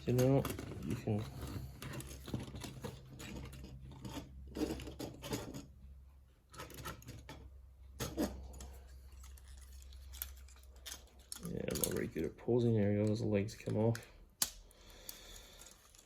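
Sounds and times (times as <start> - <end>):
plastic toy parts clicking: 9.2 - 12.2, 13.0 - 16.0.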